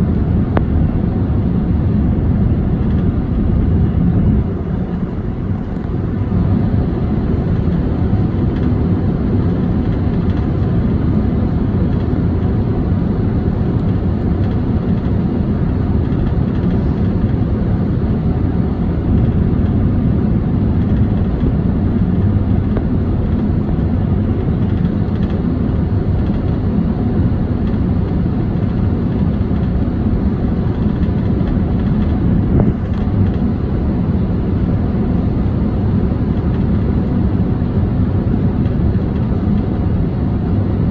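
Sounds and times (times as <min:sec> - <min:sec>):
airflow and engine noise: 0:00.0 - 0:40.9
airplane cabin noise: 0:00.0 - 0:40.9.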